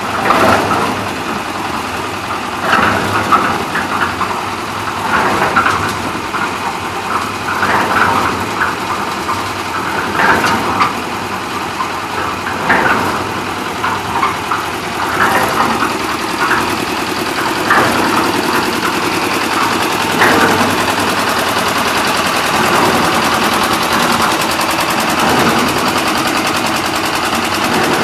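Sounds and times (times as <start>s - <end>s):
concrete mixer engine chugging: 0.0s - 28.0s.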